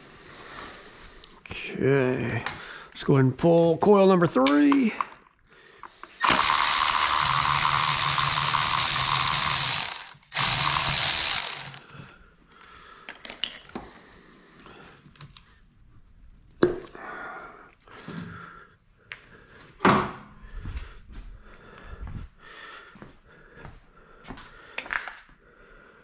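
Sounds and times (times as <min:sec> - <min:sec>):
power ratchet running: 0:06.2 - 0:11.9.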